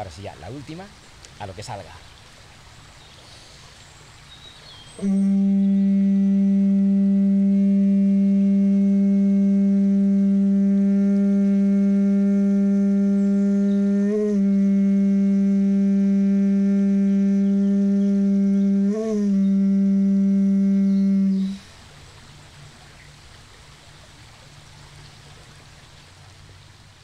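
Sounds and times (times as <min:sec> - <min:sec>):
conch shell trumpet low note: 0:05.0 - 0:21.7.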